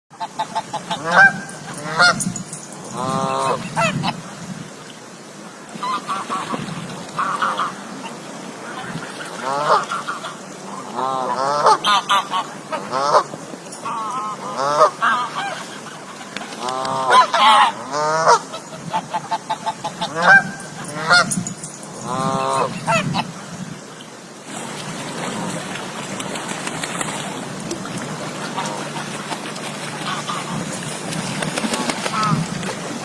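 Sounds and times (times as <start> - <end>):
geese honking: 0.2 - 4.2, 7.2 - 7.8, 8.7 - 23.3, 28.3 - 30.9, 31.7 - 32.4.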